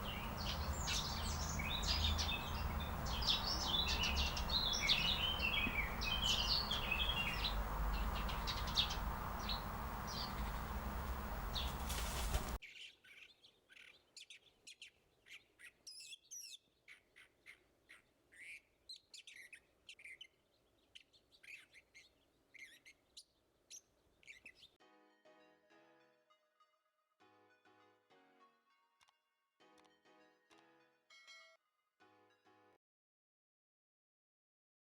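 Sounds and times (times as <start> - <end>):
loud steady background rumble: 0.0 - 12.6
small birds chirping and trilling: 0.0 - 24.8.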